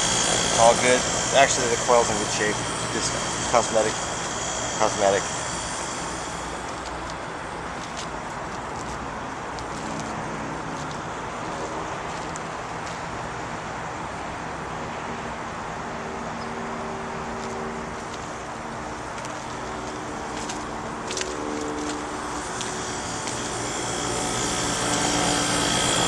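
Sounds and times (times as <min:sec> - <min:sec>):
faint wavering hums: 0:00.0 - 0:08.4, 0:19.4 - 0:26.0
fan air rushing: 0:00.0 - 0:10.2, 0:17.8 - 0:26.0.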